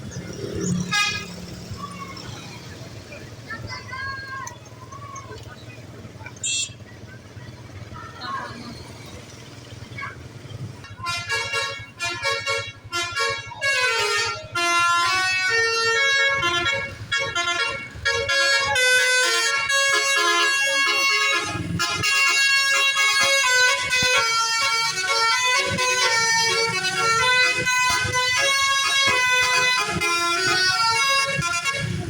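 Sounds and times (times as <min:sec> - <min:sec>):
low engine rumble: 0:00.0 - 0:32.0
musical air horn playing a tune: 0:00.8 - 0:01.4, 0:10.9 - 0:32.0.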